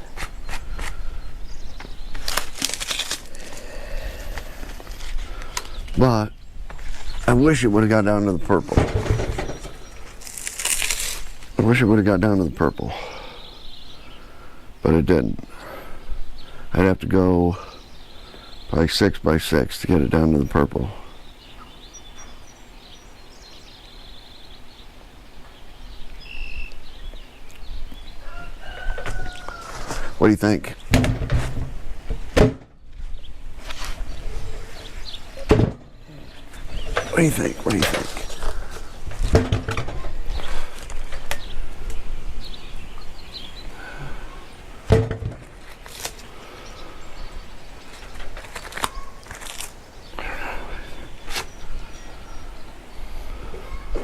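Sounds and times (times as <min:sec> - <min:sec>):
birds chirping: 0:00.0 - 0:10.7, 0:11.3 - 0:54.0
outdoor background rumble: 0:00.0 - 0:54.0
heavy thump: 0:08.6 - 0:09.9, 0:30.9 - 0:32.8, 0:35.5 - 0:36.0, 0:39.2 - 0:40.1, 0:44.9 - 0:45.5.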